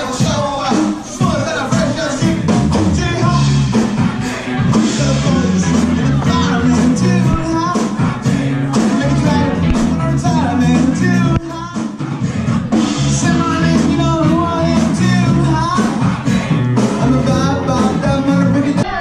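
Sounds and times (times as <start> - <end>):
rap-rock song: 0.0 - 19.0.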